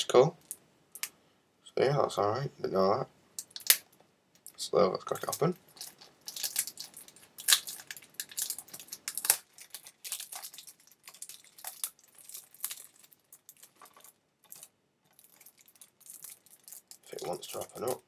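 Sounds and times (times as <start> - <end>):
sharp plastic snaps: 3.4 - 4.5.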